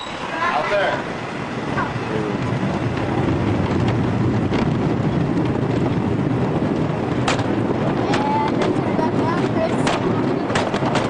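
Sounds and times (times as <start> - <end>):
roller coaster rumbling and rattling: 0.0 - 11.0
wind buffeting microphone: 0.0 - 11.0
sharp clacks: 7.1 - 11.0.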